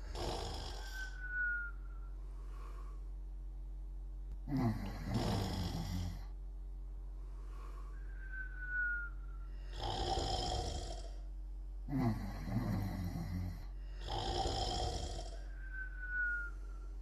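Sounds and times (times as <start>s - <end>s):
person snoring: 0.0s - 1.2s, 4.4s - 6.3s, 9.6s - 11.3s, 11.9s - 15.6s
steady low hum: 0.0s - 17.0s
thin high whistle: 0.8s - 2.2s, 8.0s - 9.5s, 15.6s - 16.9s.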